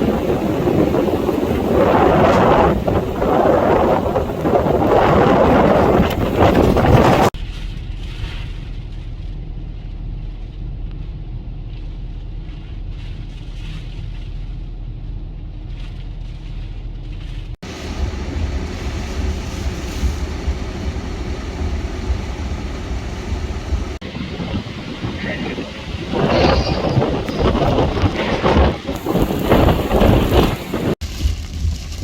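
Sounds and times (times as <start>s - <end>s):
wind hiss: 0.0s - 7.4s, 17.6s - 32.0s
wind rumbling on microphone: 0.0s - 32.0s.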